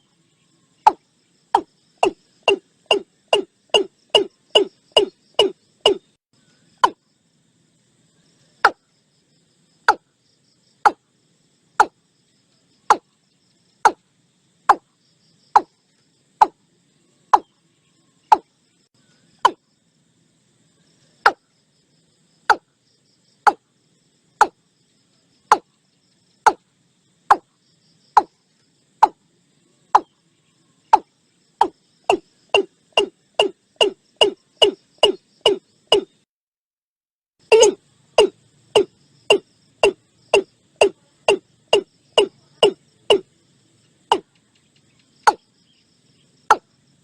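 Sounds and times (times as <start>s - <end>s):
bird calling short notes: 37.5s - 40.0s.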